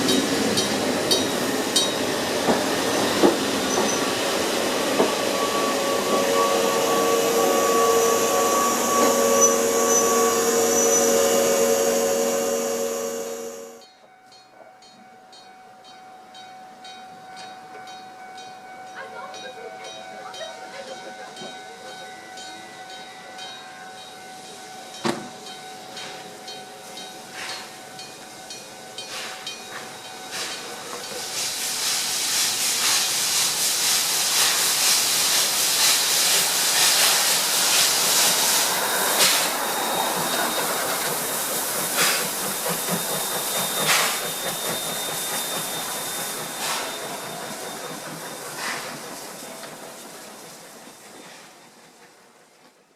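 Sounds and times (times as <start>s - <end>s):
wheels clacking over rail joints: 0.0s - 5.4s
train passing with loud hiss: 0.0s - 52.9s
level-crossing bell ringing: 3.5s - 31.3s.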